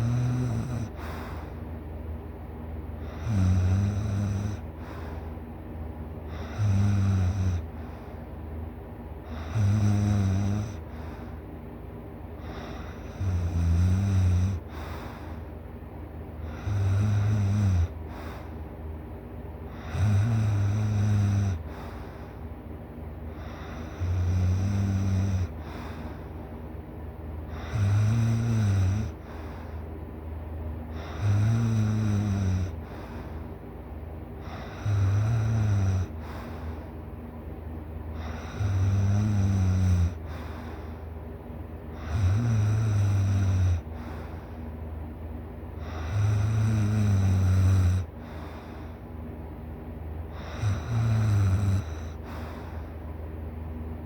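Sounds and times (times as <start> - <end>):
person snoring loudly: 0.0 - 1.1, 3.0 - 4.6, 6.3 - 7.7, 9.3 - 10.9, 12.5 - 14.9, 16.4 - 18.4, 19.8 - 21.9, 23.4 - 25.9, 27.5 - 29.5, 31.0 - 33.1, 34.4 - 36.6, 38.2 - 40.5, 42.0 - 44.1, 45.8 - 48.4, 50.4 - 52.8.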